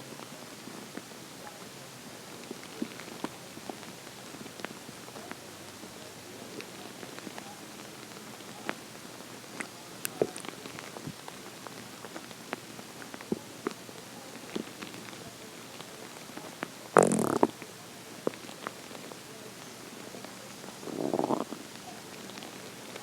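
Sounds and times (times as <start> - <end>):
stomach gurgling: 15.8 - 17.6, 20.6 - 23.0.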